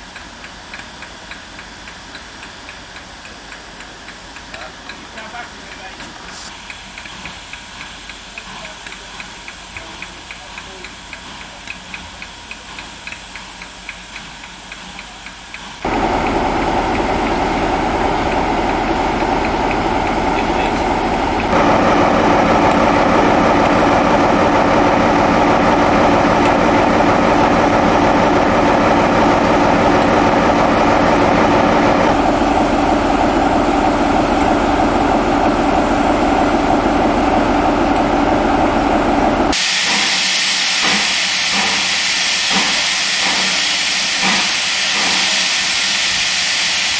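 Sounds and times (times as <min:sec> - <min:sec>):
locomotive running: 0:00.0 - 0:46.9
loud hiss of escaping steam: 0:39.5 - 0:46.9.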